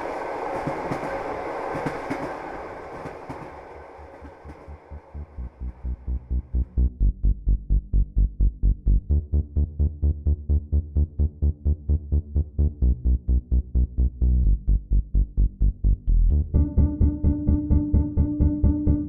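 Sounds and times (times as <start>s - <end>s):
sustained synth chord: 4.7s - 19.0s
electronic music pulsing beat: 16.6s - 19.0s.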